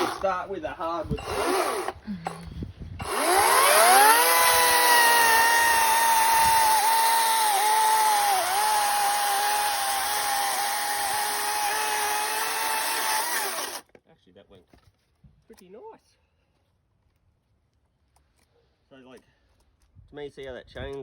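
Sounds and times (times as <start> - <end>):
electric chainsaw cutting wood: 0.0 - 0.4, 1.2 - 2.4, 3.0 - 13.8.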